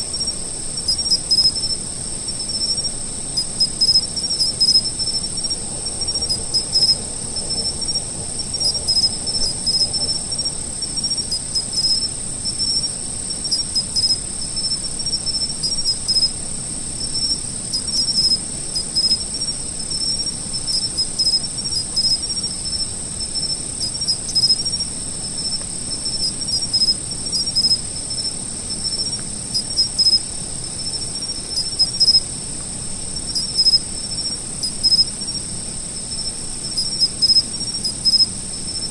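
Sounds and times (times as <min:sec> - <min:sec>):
high-pitched insect trill: 0:00.0 - 0:38.9
insect chirping in pulses: 0:00.0 - 0:38.9
sharp ticks: 0:03.4 - 0:04.8, 0:23.9 - 0:24.6.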